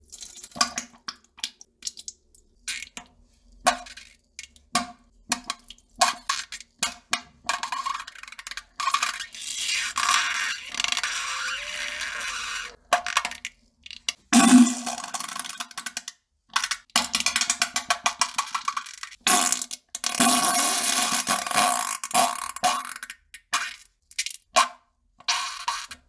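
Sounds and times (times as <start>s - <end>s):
person pooping and farting: 14.4s - 15.0s.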